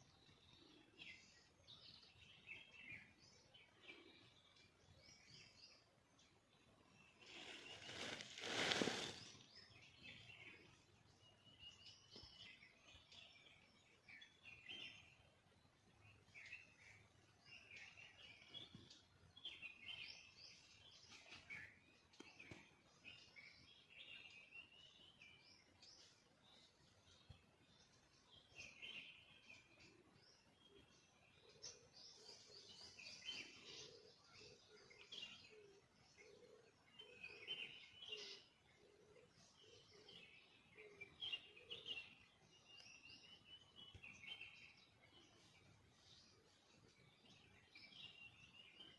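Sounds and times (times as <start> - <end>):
birds chirping and twittering: 0.0 - 48.9.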